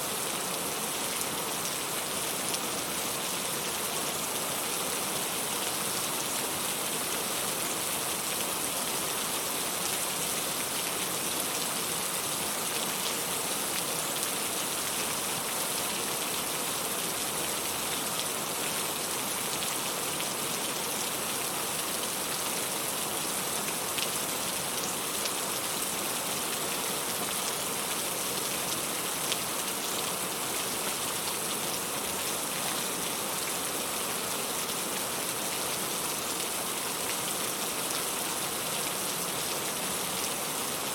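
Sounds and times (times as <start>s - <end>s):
steady rain hiss: 0.0s - 40.9s.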